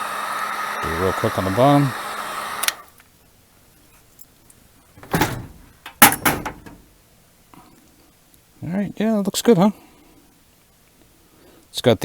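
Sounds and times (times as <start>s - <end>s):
heat gun blowing: 0.0s - 2.9s
sharp knocks: 5.0s - 6.9s.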